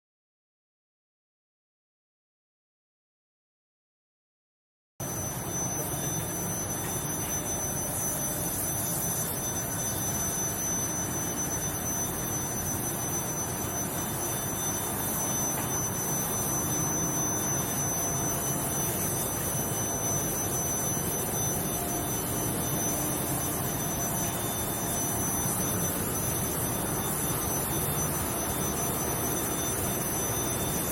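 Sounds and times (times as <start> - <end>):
high-pitched machine whine: 5.0 - 30.9.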